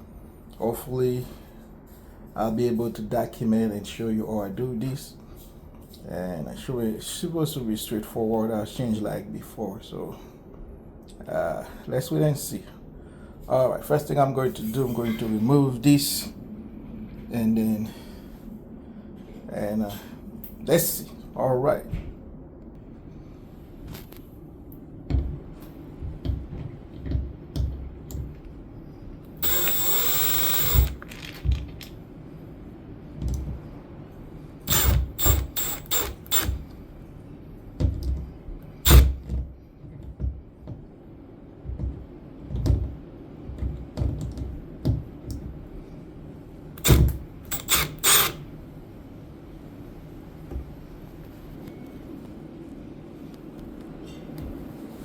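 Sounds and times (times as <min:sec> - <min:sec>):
power drill running: 0:29.4 - 0:31.1, 0:34.7 - 0:36.6, 0:38.8 - 0:39.1, 0:46.8 - 0:48.4.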